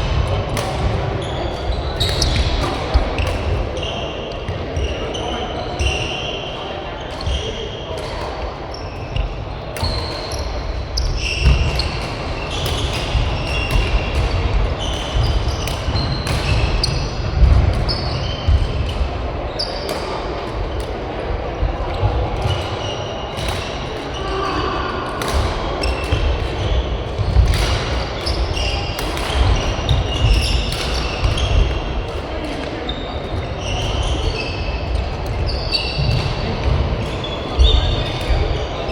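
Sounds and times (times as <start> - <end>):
shoes squeaking on court floor: 0.5 - 21.0, 25.7 - 38.9
rackets striking shuttlecock: 25.2 - 32.8.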